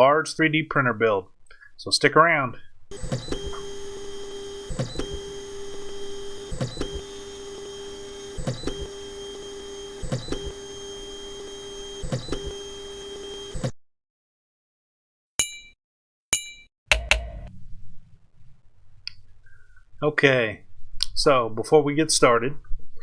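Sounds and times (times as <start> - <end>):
printer clicking: 2.9 - 13.7, 16.9 - 17.5
stepper motors whining: 2.9 - 13.7.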